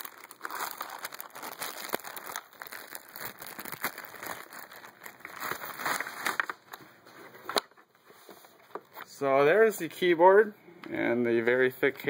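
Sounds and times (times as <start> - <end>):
packaging ripping and crumpling: 0.0 - 6.8.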